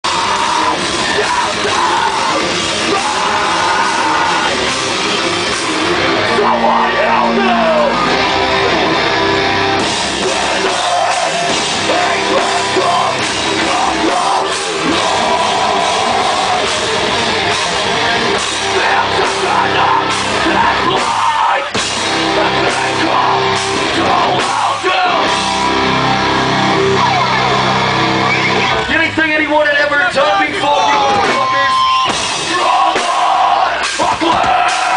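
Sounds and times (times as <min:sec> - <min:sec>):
live heavy rock band: 0:00.0 - 0:34.9.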